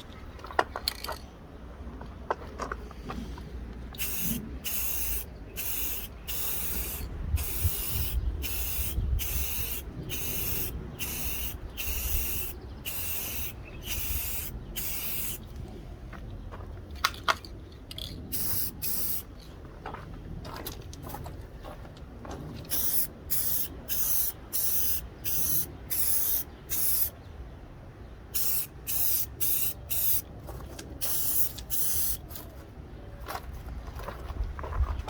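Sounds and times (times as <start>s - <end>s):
aerosol can spraying: 4.0s - 15.4s, 18.4s - 19.2s, 22.7s - 27.1s, 28.4s - 30.2s, 31.0s - 32.2s.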